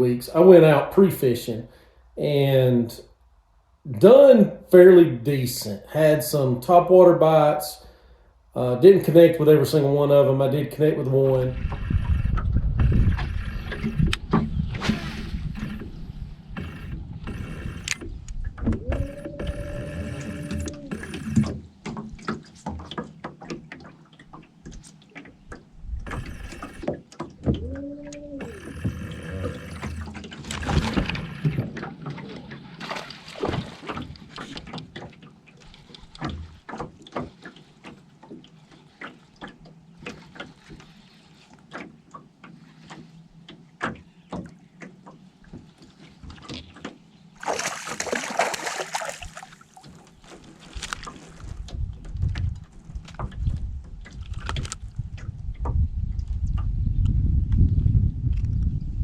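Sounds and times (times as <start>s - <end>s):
water sloshing against hull: 2.8s - 58.8s
gear knocking in a boat: 11.1s - 56.8s.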